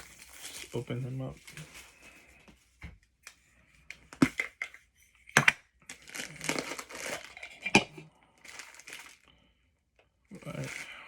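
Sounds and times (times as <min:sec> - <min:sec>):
plastic crinkling: 0:00.0 - 0:02.1, 0:05.9 - 0:07.8, 0:08.4 - 0:09.3, 0:10.3 - 0:11.0.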